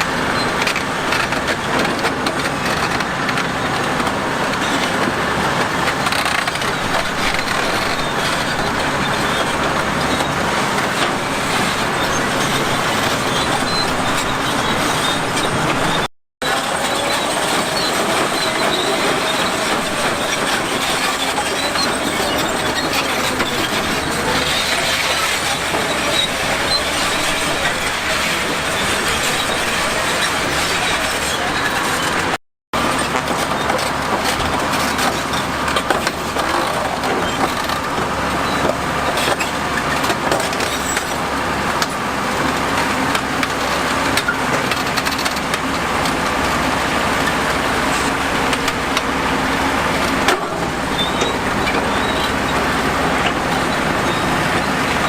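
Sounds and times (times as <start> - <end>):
bulldozer diesel engine: 0.0 - 55.0
steel tracks clanking: 0.0 - 55.0.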